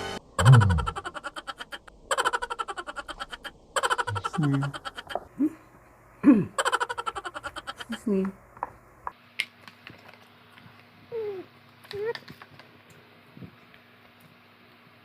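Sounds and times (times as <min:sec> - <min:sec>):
man burping: 0:00.4 - 0:01.0, 0:06.2 - 0:06.6.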